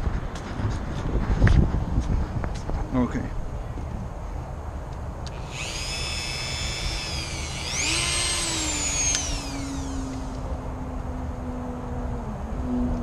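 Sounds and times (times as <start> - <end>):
rotary tool wire wheel whining: 5.3 - 10.5.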